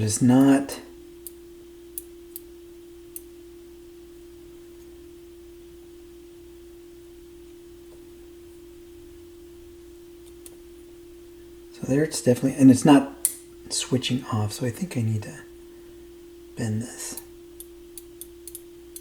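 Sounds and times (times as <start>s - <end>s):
low hum-like tone: 0.0s - 19.0s
small clicks: 17.2s - 19.0s.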